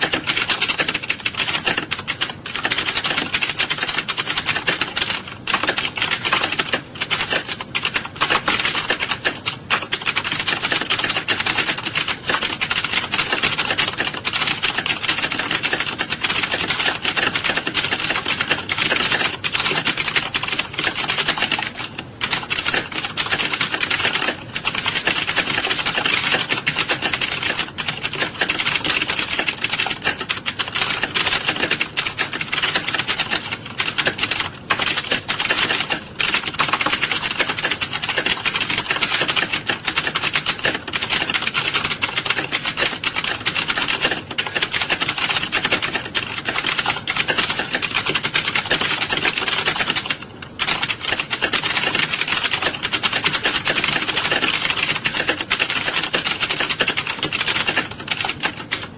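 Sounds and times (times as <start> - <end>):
many keyboards clattering: 0.0 - 58.9.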